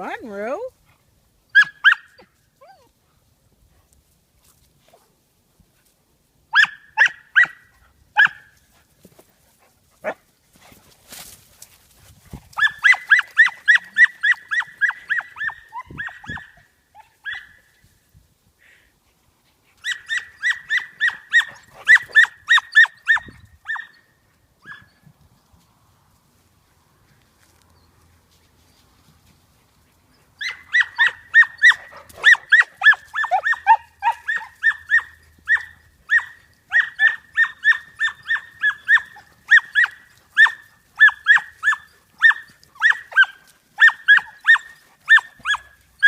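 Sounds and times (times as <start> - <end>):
puppy yapping: 30.4 - 45.8.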